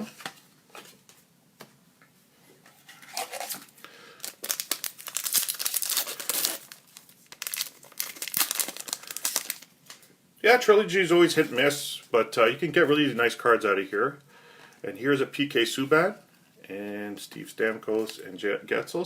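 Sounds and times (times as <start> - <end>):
wrapper tearing and crinkling: 3.1 - 10.0.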